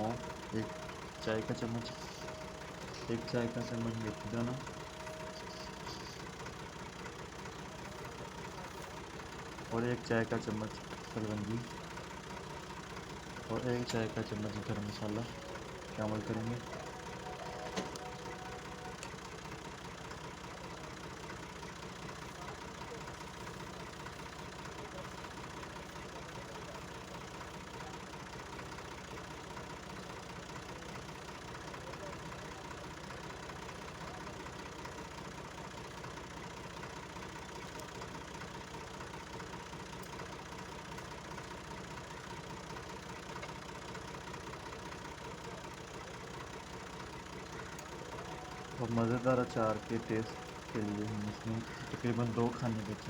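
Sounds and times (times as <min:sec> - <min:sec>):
motor drone: 0:00.0 - 0:06.8.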